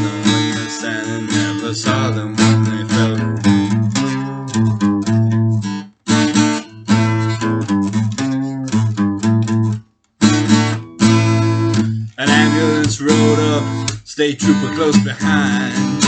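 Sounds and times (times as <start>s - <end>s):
strummed guitar chords: 0.0s - 16.0s
bass line: 11.4s - 16.0s.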